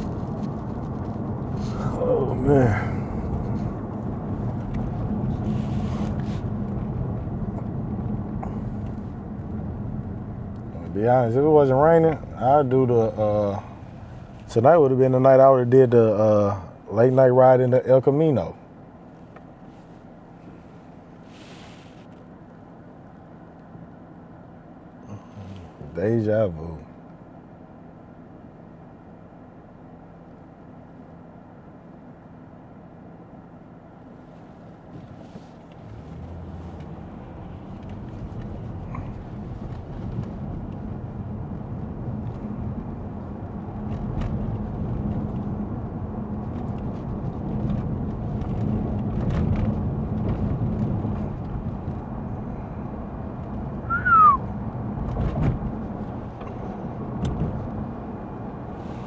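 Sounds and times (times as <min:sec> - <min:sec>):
car engine and road rumble: 0:00.0 - 0:59.0
short falling squeak: 0:53.8 - 0:54.5.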